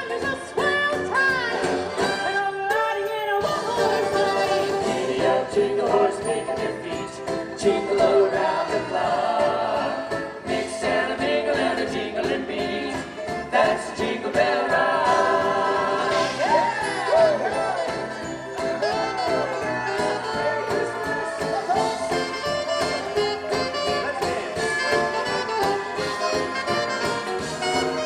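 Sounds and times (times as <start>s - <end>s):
band playing: 0.0s - 28.0s
choir singing christmas music: 0.0s - 28.0s
bells: 16.5s - 20.4s.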